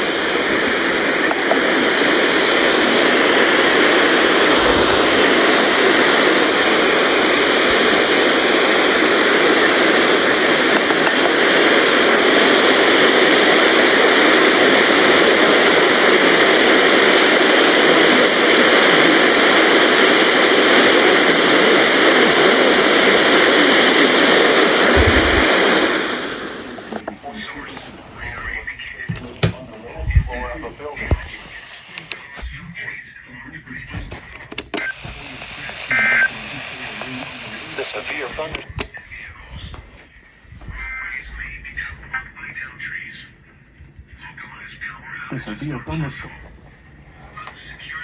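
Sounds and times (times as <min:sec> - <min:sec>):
radio static hiss: 0:00.0 - 0:48.0.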